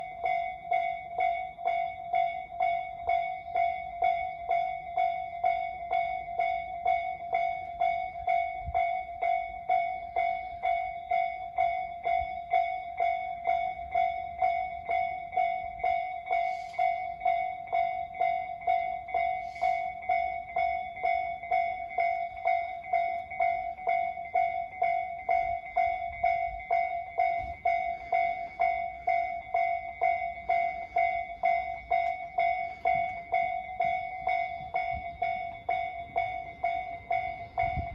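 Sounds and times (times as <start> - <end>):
level-crossing bell ringing: 0.0 - 37.9.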